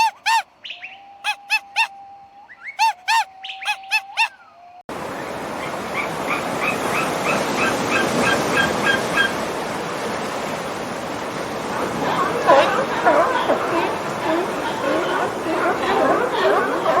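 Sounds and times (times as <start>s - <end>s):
short chirping calls: 0.0s - 1.9s, 2.5s - 4.5s
sharp pitched animal calls: 0.0s - 2.0s, 2.6s - 4.5s.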